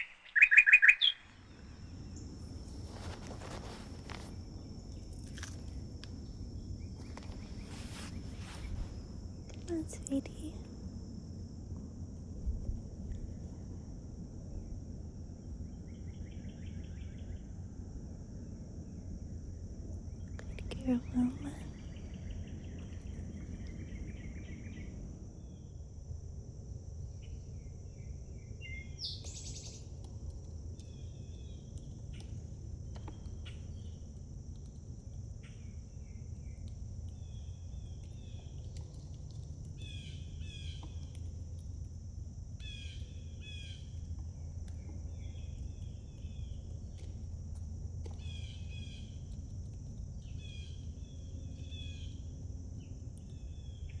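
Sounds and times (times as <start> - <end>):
birds chirping: 0.0 - 10.6
insects trilling: 0.0 - 54.0
steady low rumble: 1.0 - 28.6, 29.8 - 54.0.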